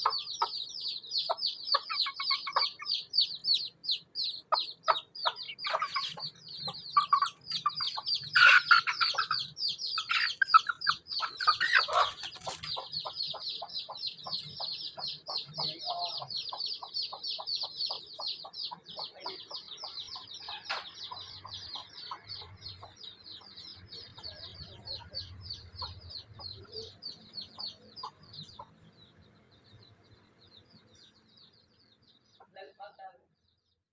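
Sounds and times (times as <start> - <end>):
chickens clucking: 0.0 - 33.2
baby chicks peeping: 0.0 - 33.9.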